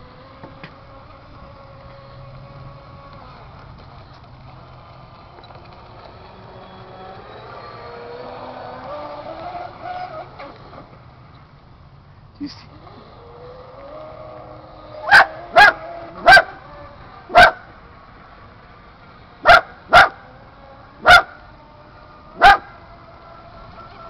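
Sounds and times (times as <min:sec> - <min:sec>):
faint steady whine: 0:00.0 - 0:24.0
dog barking: 0:15.1 - 0:16.5, 0:17.4 - 0:17.6, 0:19.5 - 0:20.2, 0:21.0 - 0:21.3, 0:22.4 - 0:22.7.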